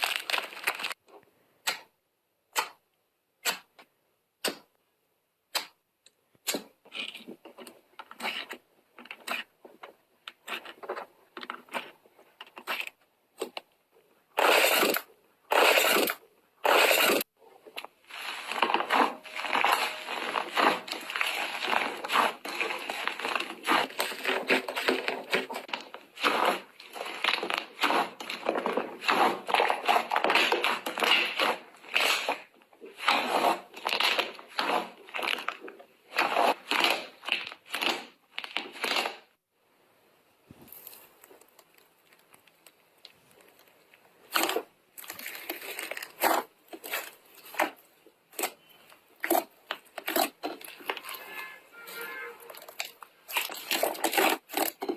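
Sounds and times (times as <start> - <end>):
slime squelching and popping: 16.6 - 39.3, 40.5 - 54.9.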